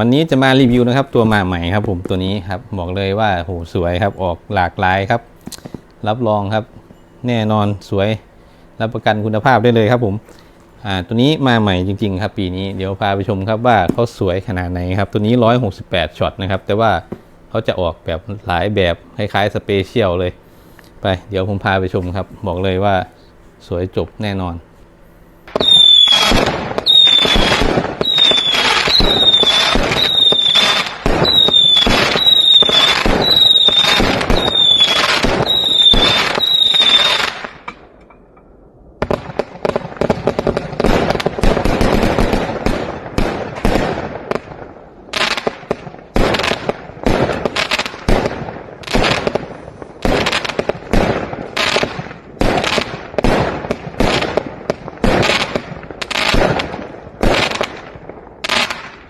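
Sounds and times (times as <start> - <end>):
rapid firework shots and crackling: 25.5 - 37.7, 39.0 - 59.0
firework shots with whistles: 25.5 - 37.9, 39.0 - 59.0.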